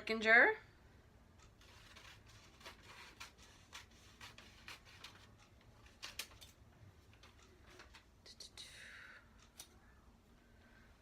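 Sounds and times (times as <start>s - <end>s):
scissors snipping paper: 1.5s - 6.6s.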